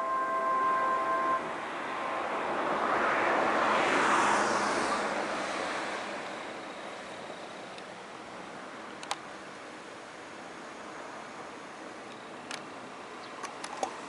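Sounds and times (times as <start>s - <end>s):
loudspeaker chime: 0.0s - 1.5s
vehicle passing by: 0.0s - 6.6s.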